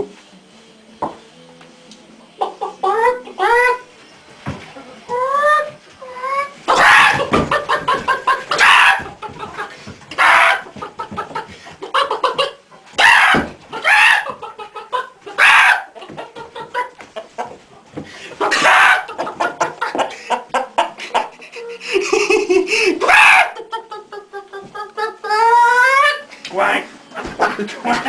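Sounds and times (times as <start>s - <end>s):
man imitating chicken clucking: 2.4s - 3.9s, 5.1s - 7.3s, 23.0s - 26.3s
man imitating chicken squawks: 2.8s - 3.9s, 23.0s - 23.6s, 25.0s - 26.3s.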